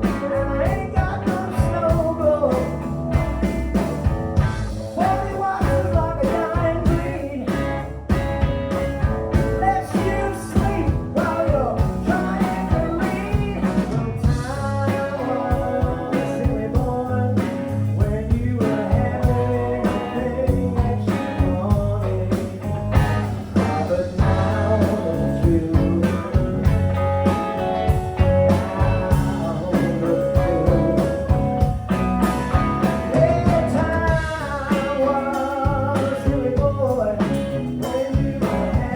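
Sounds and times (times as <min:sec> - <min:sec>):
blues-rock band playing: 0:00.0 - 0:38.9.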